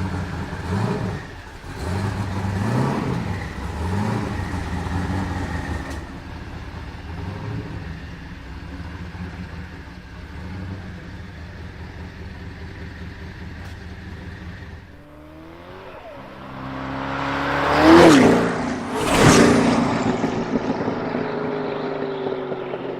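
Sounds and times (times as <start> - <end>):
car engine revving and passing: 0.0 - 22.9.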